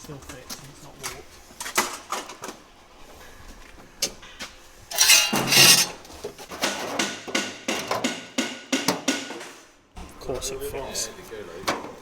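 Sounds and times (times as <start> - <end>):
harsh metal scraping: 4.9 - 6.0.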